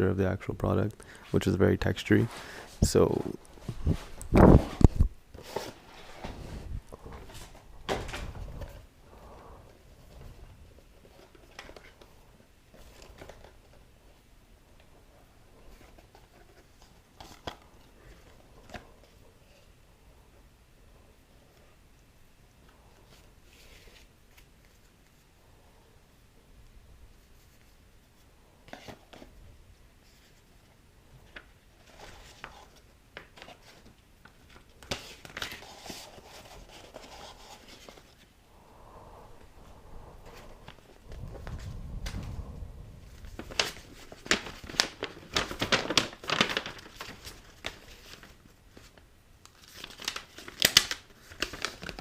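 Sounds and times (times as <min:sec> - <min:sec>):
cardboard packaging rustling: 0:02.2 - 0:08.9, 0:09.7 - 0:13.9, 0:31.2 - 0:38.3, 0:39.3 - 0:42.4, 0:43.0 - 0:52.0.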